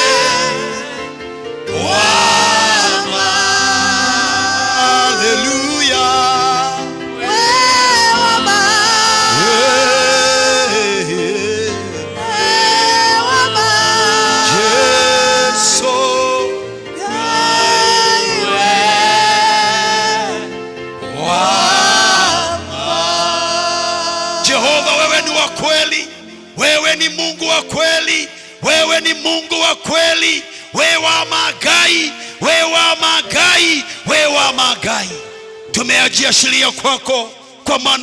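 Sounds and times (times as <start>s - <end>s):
sustained instrumental backing: 0.0s - 29.4s
worship song singing: 0.0s - 38.0s.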